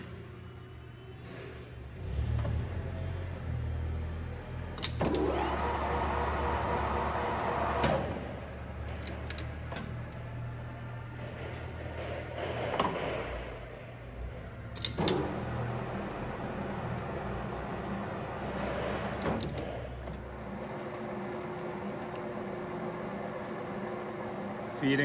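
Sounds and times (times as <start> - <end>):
lathe motor hum: 5.0 - 8.1, 15.0 - 25.0
rough machine noise: 5.0 - 9.4, 15.0 - 25.0.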